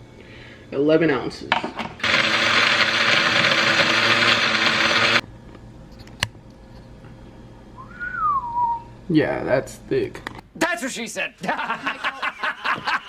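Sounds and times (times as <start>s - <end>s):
blender motor running: 2.0s - 5.2s.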